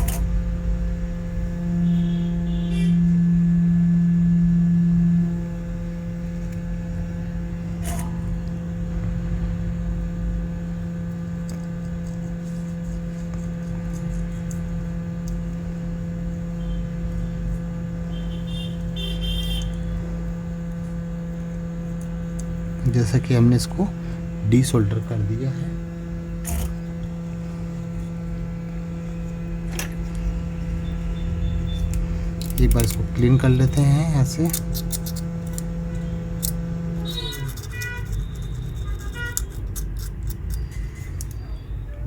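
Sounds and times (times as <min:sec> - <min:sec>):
hot air blower humming: 0:00.0 - 0:39.4.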